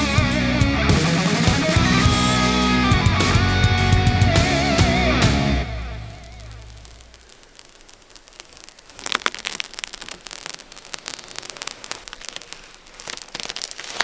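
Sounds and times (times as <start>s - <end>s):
plastic film peeling: 6.1s - 14.0s.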